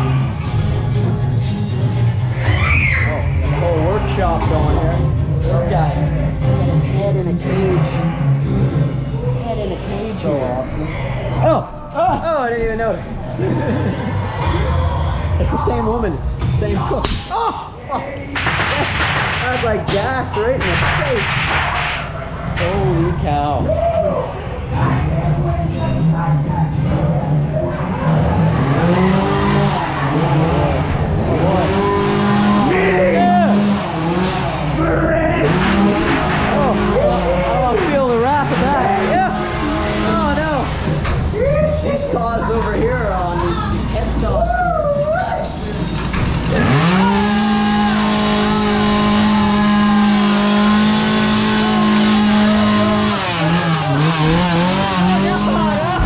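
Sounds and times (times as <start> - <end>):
screeching whines: 2.2 - 3.9, 44.3 - 50.0
chainsaw revving: 28.5 - 32.7, 33.4 - 34.8, 46.3 - 55.9.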